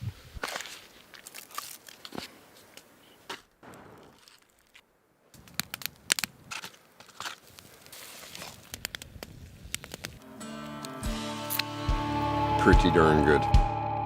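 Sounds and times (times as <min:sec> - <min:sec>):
crackling and crunching clicks: 0:03.7 - 0:11.7.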